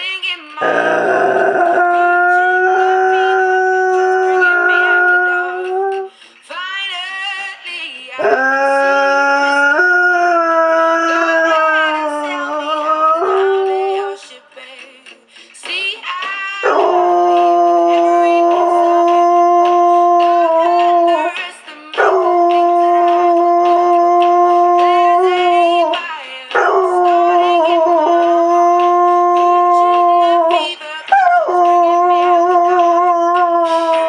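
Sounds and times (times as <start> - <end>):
dog howling: 0.6 - 6.1, 8.2 - 14.2, 16.6 - 21.4, 22.0 - 34.0
song playing: 0.6 - 6.6, 8.1 - 16.0, 16.6 - 34.0
dog whining: 4.2 - 6.1.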